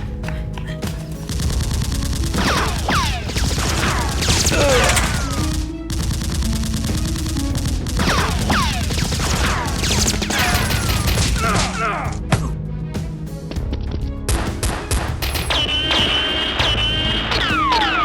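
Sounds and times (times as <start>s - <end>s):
background music: 0.0s - 18.0s
gunfire sound effects: 1.3s - 11.7s, 14.3s - 18.0s
falling whistles: 15.5s - 18.0s.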